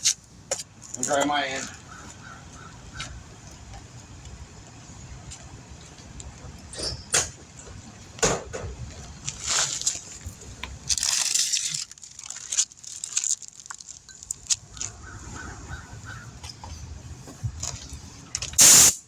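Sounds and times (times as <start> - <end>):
compressed air hose hissing: 18.6 - 19.0.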